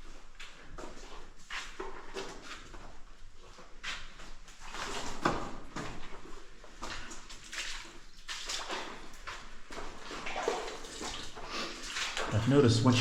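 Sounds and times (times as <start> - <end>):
footsteps wading through water: 3.5 - 13.0.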